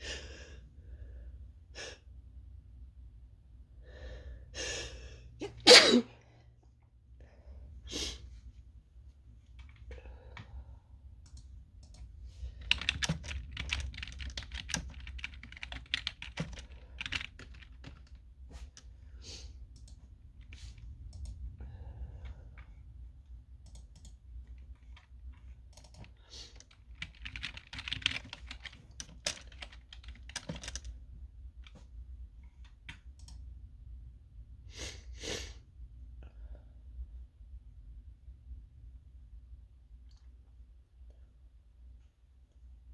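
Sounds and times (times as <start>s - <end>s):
low steady hum: 0.0s - 42.9s
typing on computer keyboard: 11.2s - 18.9s, 23.6s - 31.0s.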